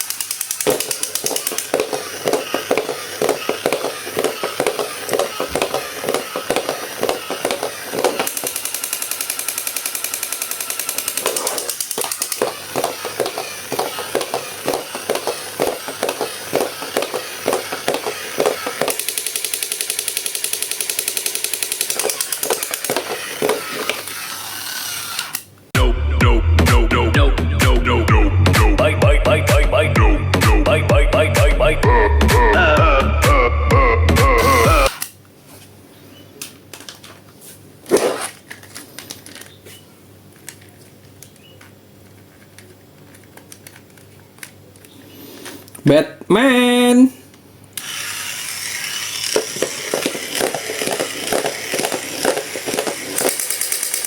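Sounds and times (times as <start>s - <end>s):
mechanical rattling clicks: 0.0s - 24.2s.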